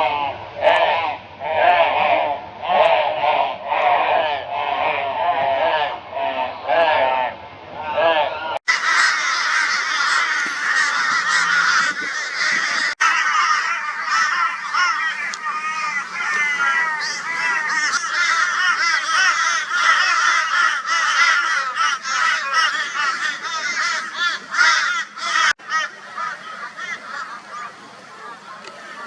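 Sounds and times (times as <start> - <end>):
crows calling raucously: 8.7 - 29.0.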